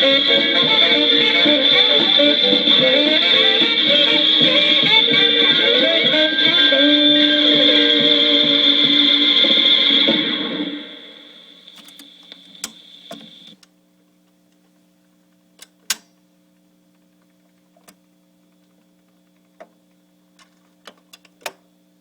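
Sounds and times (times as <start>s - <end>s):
music: 0.0s - 11.6s
vinyl record hum: 0.0s - 15.6s
vinyl clicks and pops: 11.6s - 13.7s, 15.6s - 16.2s.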